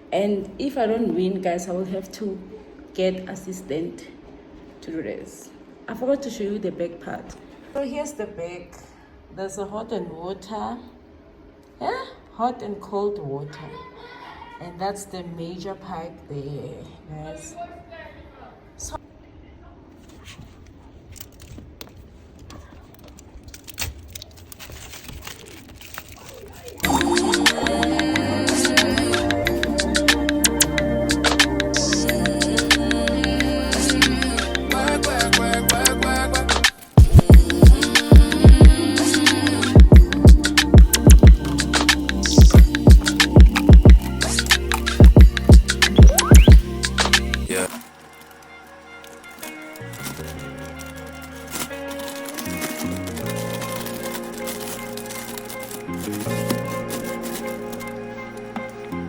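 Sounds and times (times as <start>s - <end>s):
handling clicks and rattles: 20.6s - 27.4s, 39.2s - 59.0s
low hum: 26.8s - 47.5s
quiet music with sustained chords: 26.8s - 59.0s.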